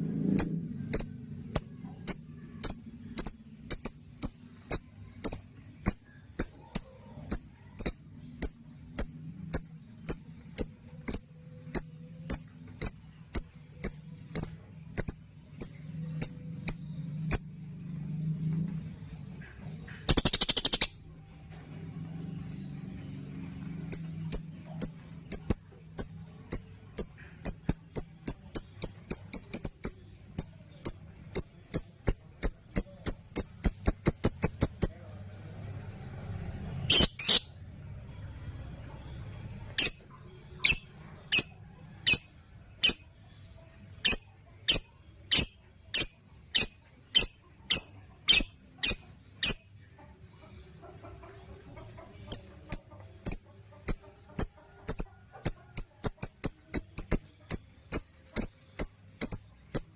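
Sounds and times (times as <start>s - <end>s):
lovebird shrill chirping rattle: 0.2s - 17.6s, 20.0s - 21.1s, 23.9s - 35.0s, 36.9s - 37.6s, 39.8s - 40.0s, 40.6s - 43.2s, 44.0s - 49.7s, 52.3s - 59.9s.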